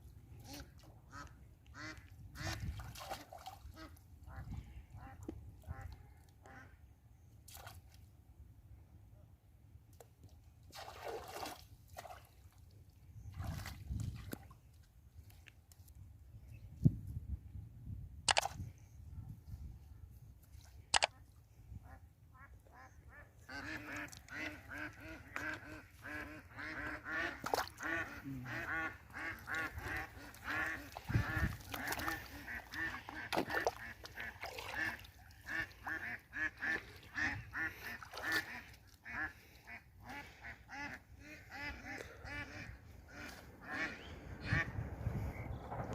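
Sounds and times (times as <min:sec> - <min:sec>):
waterfowl quacking and honking: 0:00.3 - 0:02.8, 0:03.6 - 0:06.7, 0:21.8 - 0:44.8.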